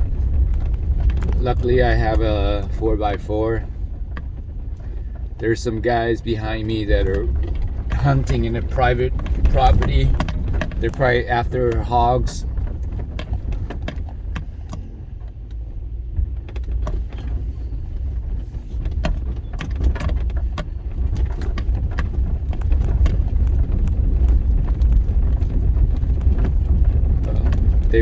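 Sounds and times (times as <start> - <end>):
engine and tyres rumbling: 0.0 - 28.0
truck knocks and rattles: 0.0 - 28.0.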